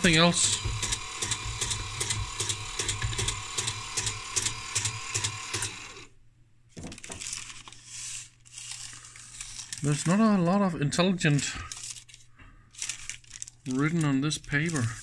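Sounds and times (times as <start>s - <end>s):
printer mechanical clatter: 0.0s - 6.0s
handling noises: 6.7s - 15.0s.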